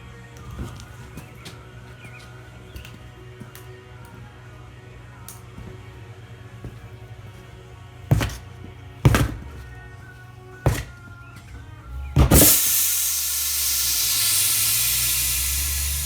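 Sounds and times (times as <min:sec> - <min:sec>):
background music: 0:00.0 - 0:16.0
loud pop of tire bead seating: 0:12.0 - 0:16.0
hiss of escaping gas: 0:12.3 - 0:16.0.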